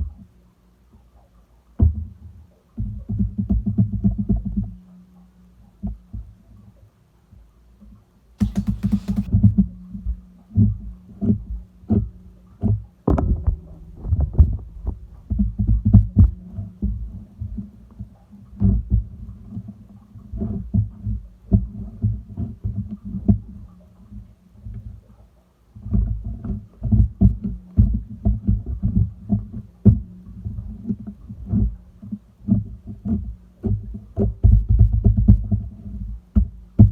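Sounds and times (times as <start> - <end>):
crackly hiss: 8.4 - 9.4.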